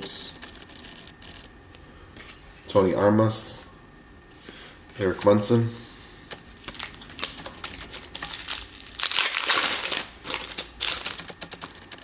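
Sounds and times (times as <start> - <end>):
foil wrapper crinkling: 0.4 - 1.5, 6.3 - 12.0.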